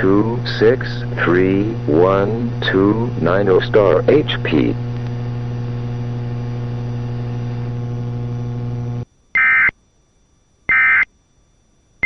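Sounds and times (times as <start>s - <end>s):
electrical hum: 0.0s - 12.0s
digital data tone bursts: 9.4s - 9.7s, 10.7s - 11.1s.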